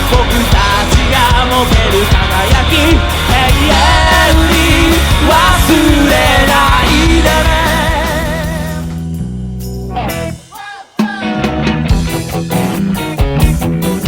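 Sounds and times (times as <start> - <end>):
person singing: 0.0 - 9.0, 10.5 - 11.7
drums: 0.0 - 14.0
guitar: 0.0 - 14.0.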